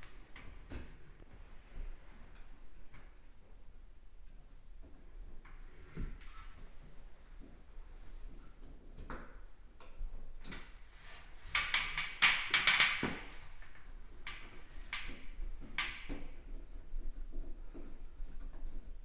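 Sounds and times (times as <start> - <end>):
light clicks and rustling: 8.6 - 18.8
sharp scraping clicks: 11.4 - 13.5.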